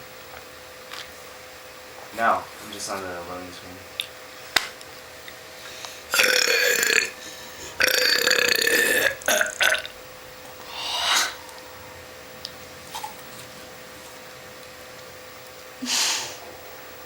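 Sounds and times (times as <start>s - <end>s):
woman burping loudly: 6.1s - 7.2s, 7.8s - 9.9s.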